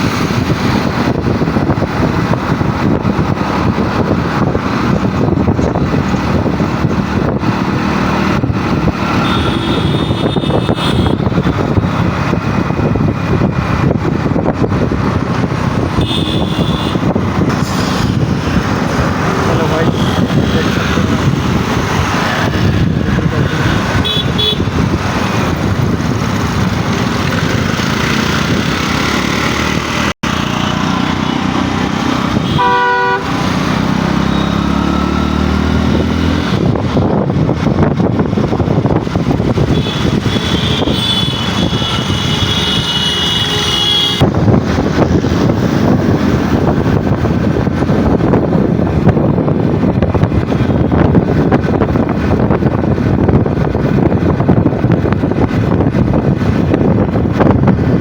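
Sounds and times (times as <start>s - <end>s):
road traffic noise: 0.0s - 58.0s
vehicle horn: 9.1s - 11.4s, 16.0s - 17.1s, 19.8s - 20.6s, 23.7s - 24.8s, 32.4s - 33.5s, 39.6s - 44.3s.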